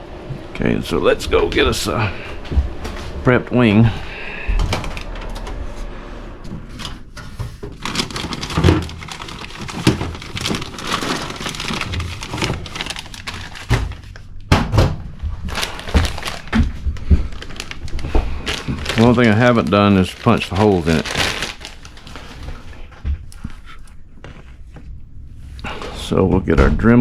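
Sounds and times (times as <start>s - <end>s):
crinkling: 6.6s - 14.5s, 15.2s - 24.9s
hard plastic objects clattering: 6.7s - 14.3s, 15.5s - 22.8s.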